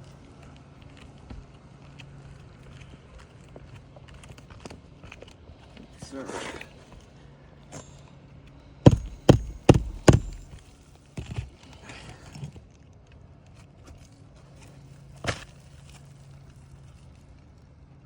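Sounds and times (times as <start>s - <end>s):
hammer blows: 8.9s - 10.6s
light knocks: 8.9s - 10.6s.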